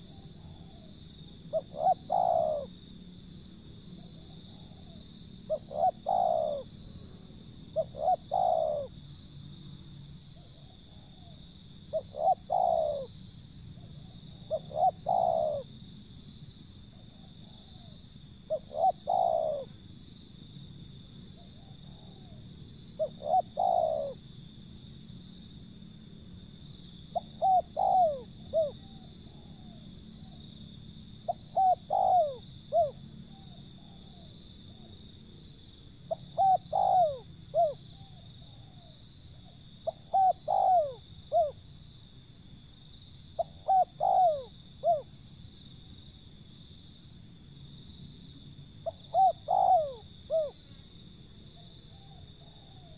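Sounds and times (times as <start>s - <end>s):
dove cooing: 0.0s - 2.8s, 4.0s - 6.8s, 7.7s - 9.0s, 10.4s - 13.2s, 13.8s - 15.7s, 16.9s - 19.8s, 21.4s - 24.2s, 27.1s - 30.6s, 31.2s - 35.0s, 36.1s - 41.6s, 43.4s - 45.1s, 48.8s - 50.6s, 51.6s - 52.9s.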